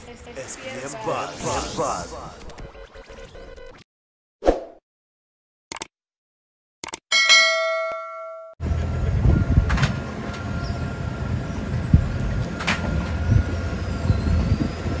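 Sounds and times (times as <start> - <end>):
sharp clicks: 5.7 - 5.9, 6.8 - 7.0
bell-like ding: 7.1 - 8.6
steady rumbling noise: 8.6 - 15.0.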